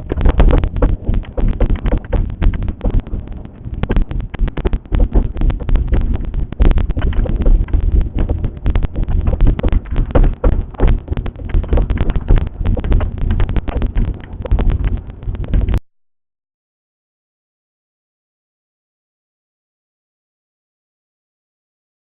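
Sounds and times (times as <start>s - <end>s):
sharp irregular knocks: 0.0s - 15.8s
steady low rumble: 0.0s - 15.8s.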